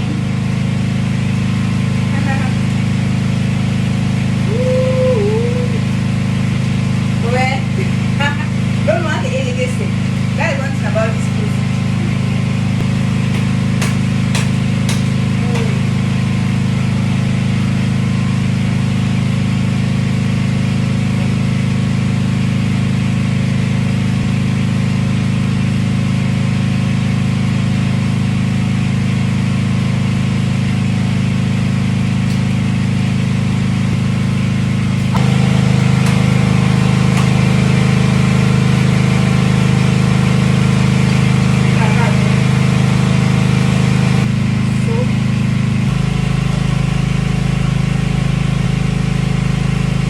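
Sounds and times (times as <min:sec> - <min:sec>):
petrol generator humming: 0:00.0 - 0:50.0
sharp knocks: 0:13.3 - 0:15.8, 0:35.0 - 0:37.5.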